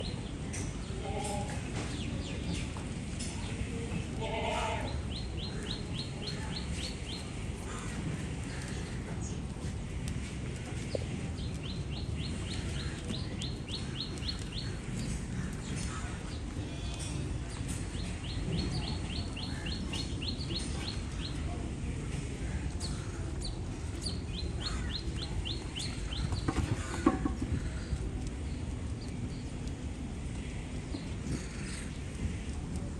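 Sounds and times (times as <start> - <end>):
low background noise: 0.0 - 32.9
goat bleating: 1.0 - 1.6, 4.2 - 5.0.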